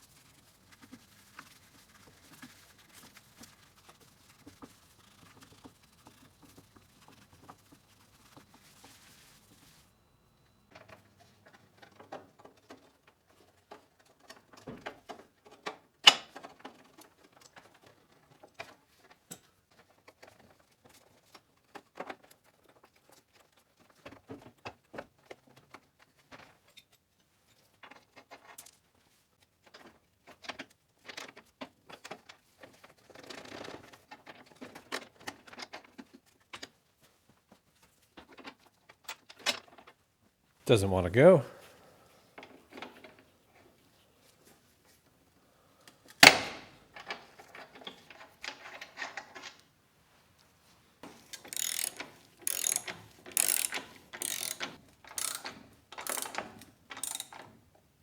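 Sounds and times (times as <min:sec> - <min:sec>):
hand tools clicking and tapping: 0:51.4 - 0:57.4.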